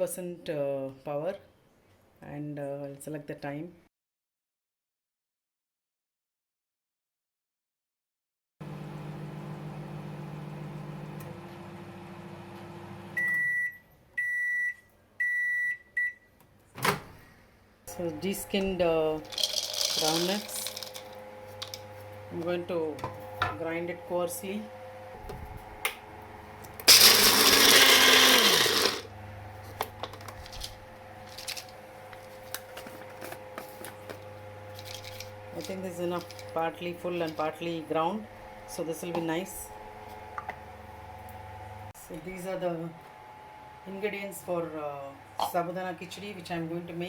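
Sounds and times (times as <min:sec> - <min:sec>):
microwave oven humming: 0:08.6 - 0:14.6, 0:17.9 - 0:45.4
long microwave beeps: 0:13.1 - 0:16.3
electric grinder grinding peanuts: 0:18.2 - 0:22.4, 0:26.4 - 0:29.1, 0:29.7 - 0:37.7.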